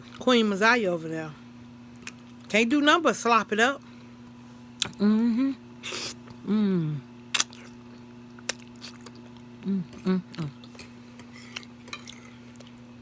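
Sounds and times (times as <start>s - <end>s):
soft chewing and mouth sounds: 1.9s - 2.5s, 7.3s - 12.9s
short vocal sounds: 4.8s - 7.1s, 9.6s - 10.6s.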